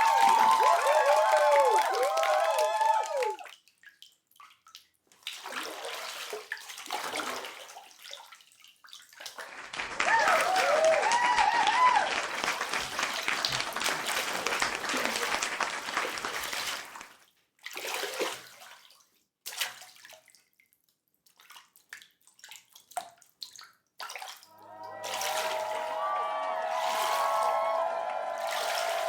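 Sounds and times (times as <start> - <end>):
water drips and small splashes: 3.4 - 9.4, 16.3 - 24.5
pouring splashing water: 12.5 - 17.1, 26.6 - 29.0.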